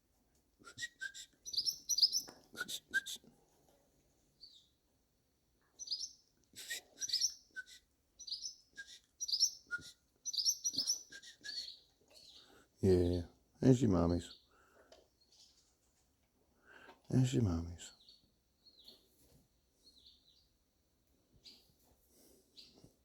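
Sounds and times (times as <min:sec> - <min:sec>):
birds chirping: 0:00.7 - 0:03.1, 0:05.8 - 0:15.7, 0:16.6 - 0:19.2.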